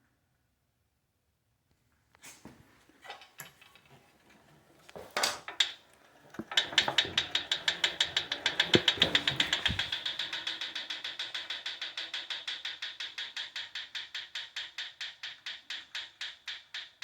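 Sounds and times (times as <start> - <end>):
exercise bike ticking: 5.5 - 17.0
knock: 8.6 - 10.0.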